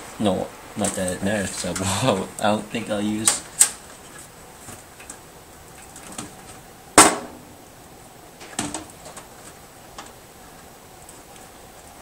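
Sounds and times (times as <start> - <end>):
sharp knock: 7.0 - 7.4.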